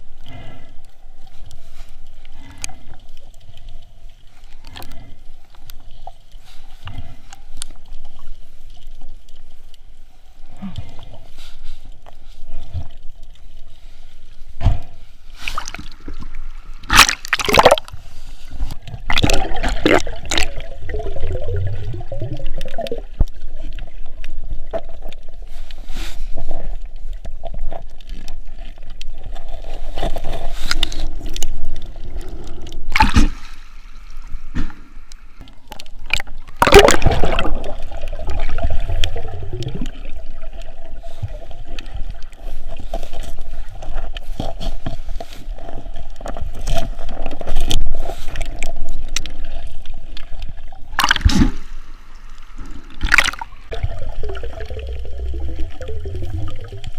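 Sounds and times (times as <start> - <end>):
sea water sloshing and gurgling: 0.0 - 56.9
rushes of bubbles or splashing: 15.4 - 25.5, 26.4 - 34.7, 35.4 - 44.6, 45.6 - 51.8, 52.4 - 56.9.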